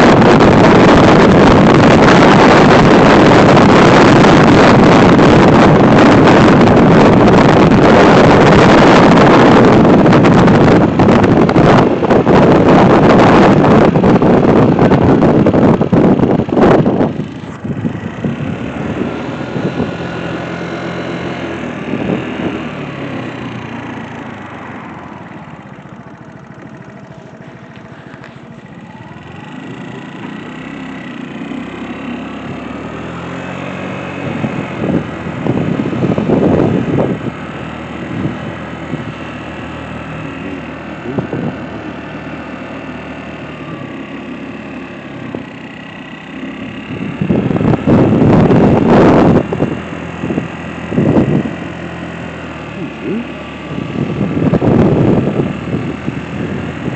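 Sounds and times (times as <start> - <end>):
vehicle engine running: 0.0 - 56.9.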